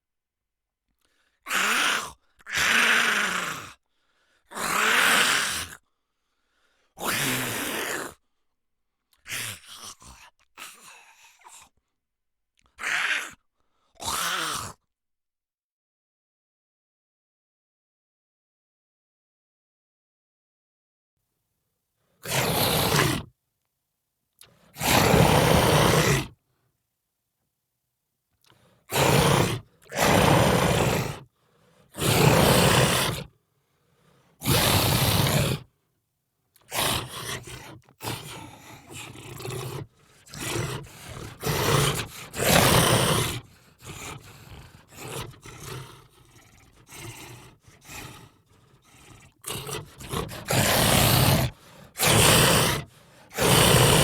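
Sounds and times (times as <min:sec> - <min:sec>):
monster roars and growls: 0:22.3 - 0:23.3, 0:24.8 - 0:26.3, 0:28.9 - 0:31.2, 0:32.0 - 0:33.3, 0:34.4 - 0:35.7, 0:36.7 - 0:46.1, 0:49.3 - 0:54.0.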